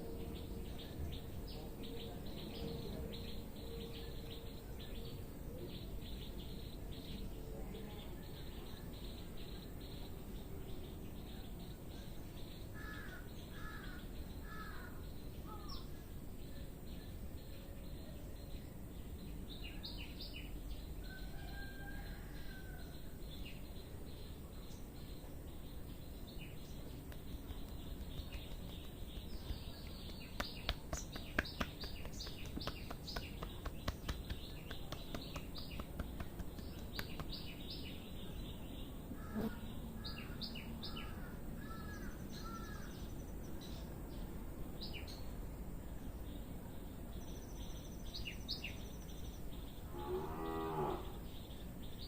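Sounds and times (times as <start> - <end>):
birds chirping: 0.0 - 52.0.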